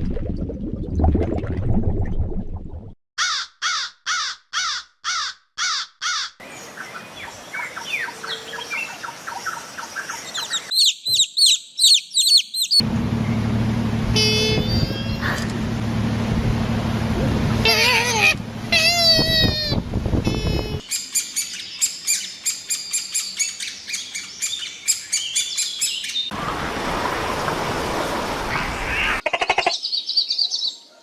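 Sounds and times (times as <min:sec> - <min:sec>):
bird chirping: 0:06.6 - 0:12.8
high-pitched bird calls: 0:09.9 - 0:12.8, 0:14.1 - 0:15.6, 0:17.6 - 0:26.3
bird harsh calls: 0:10.3 - 0:12.8, 0:14.2 - 0:15.5, 0:17.6 - 0:26.3
low hum: 0:12.8 - 0:20.8.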